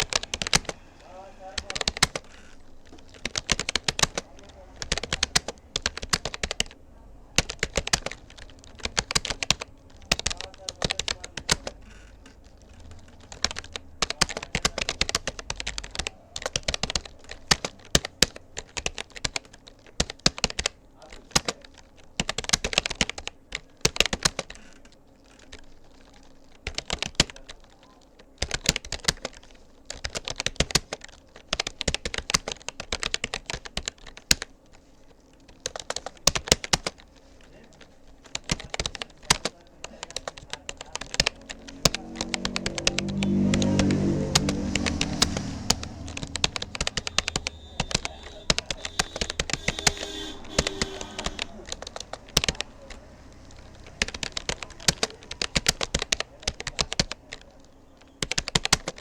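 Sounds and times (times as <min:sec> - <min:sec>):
keyboard typing clicks: 0:00.0 - 0:27.7, 0:35.4 - 0:59.0.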